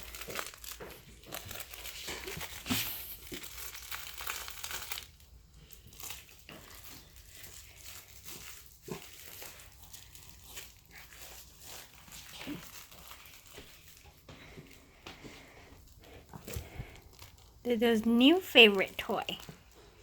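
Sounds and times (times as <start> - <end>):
dog chewing crinkly toy: 0.0 - 20.0.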